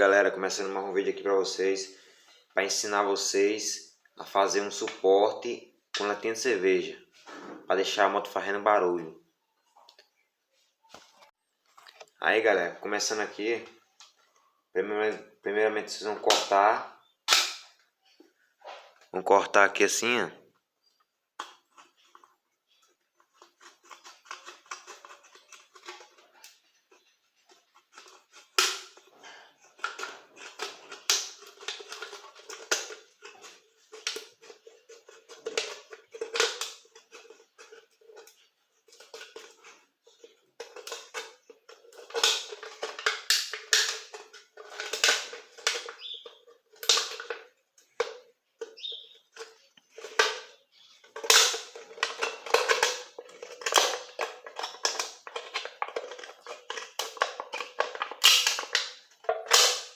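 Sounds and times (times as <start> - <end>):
aluminium can crinkling and clicking: 15.1 - 17.8, 21.0 - 59.9.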